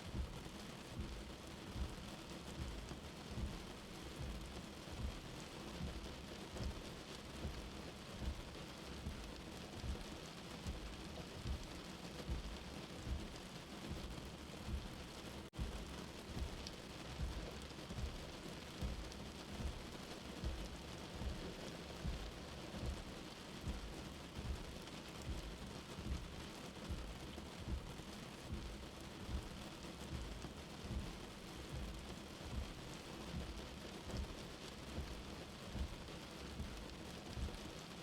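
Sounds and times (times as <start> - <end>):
soft slow heartbeat: 0.0 - 38.0
steady rain: 0.0 - 38.0.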